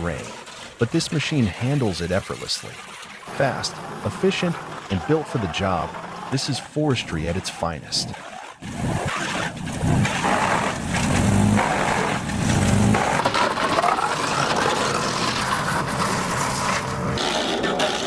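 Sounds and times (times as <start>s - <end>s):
wood cracking and grinding: 0.0s - 6.6s, 7.2s - 18.0s
wood chipper engine under load: 1.4s - 6.4s, 8.6s - 18.0s
rising whine: 8.6s - 13.3s.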